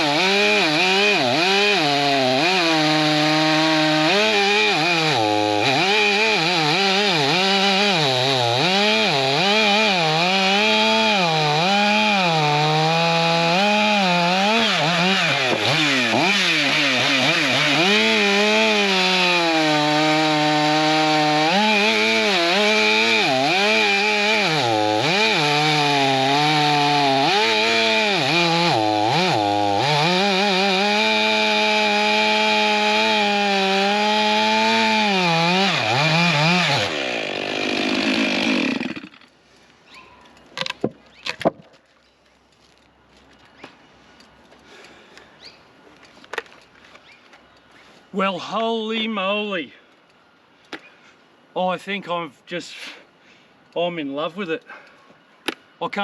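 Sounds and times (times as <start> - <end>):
chainsaw cutting wood: 0.0 - 39.4.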